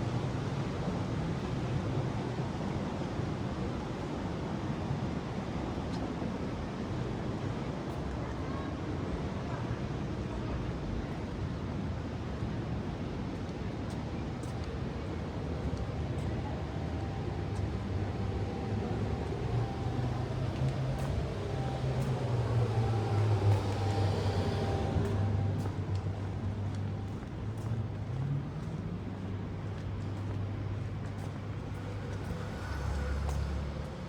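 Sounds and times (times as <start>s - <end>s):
motor engine humming: 15.6s - 27.4s.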